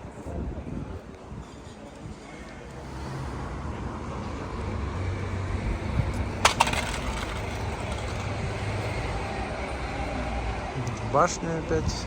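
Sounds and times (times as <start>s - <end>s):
city traffic rumble: 0.0s - 12.0s
sharp clacks: 6.4s - 8.4s.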